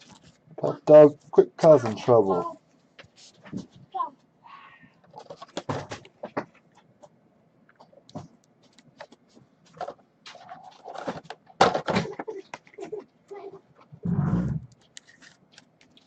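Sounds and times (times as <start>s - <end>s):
clicks and rustles: 5.0s - 13.1s, 14.7s - 16.0s.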